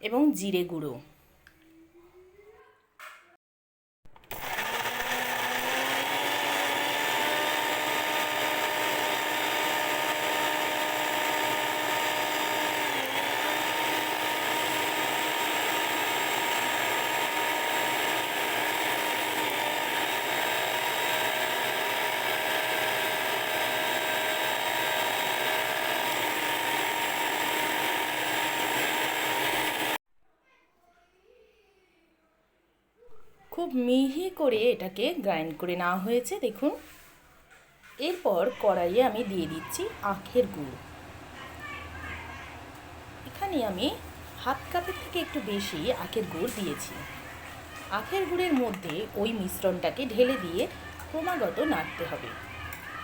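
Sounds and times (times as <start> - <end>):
mixer grinder motor whine: 4.3 - 30.0, 42.5 - 53.0.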